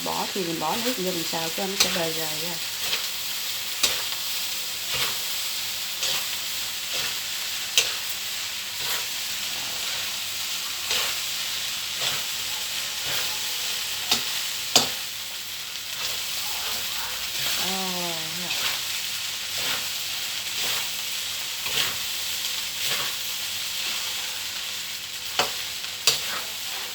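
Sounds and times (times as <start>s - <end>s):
rice sizzling in a pan: 0.0s - 26.9s
spatula scraping and knocking pan: 3.8s - 4.2s, 6.0s - 8.2s.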